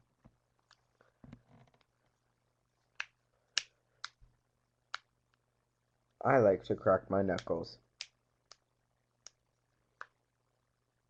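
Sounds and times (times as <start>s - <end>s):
faint steady hum: 0.0s - 11.0s
knuckles cracking: 2.9s - 4.3s, 10.0s - 10.2s.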